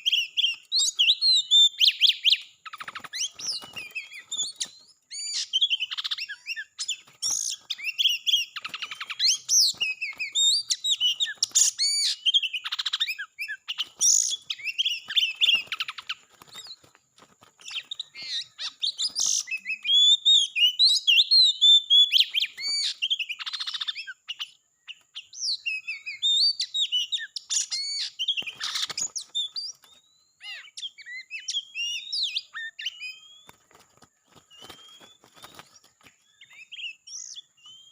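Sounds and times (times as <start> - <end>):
bird whistling and chirping: 0.0 - 16.9, 17.6 - 37.9.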